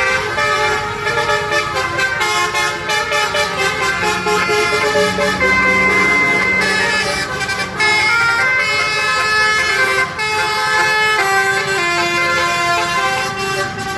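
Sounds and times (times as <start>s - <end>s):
multi-tone bus horn tune: 0.0s - 13.9s.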